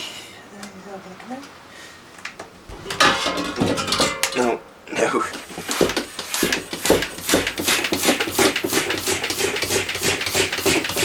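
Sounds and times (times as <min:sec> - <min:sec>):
hand pump strokes: 0:05.6 - 0:11.0.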